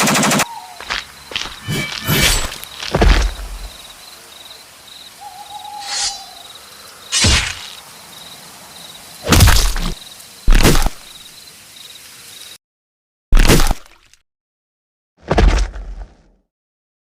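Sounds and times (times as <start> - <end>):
faint high chirping: 0.4 - 9.0.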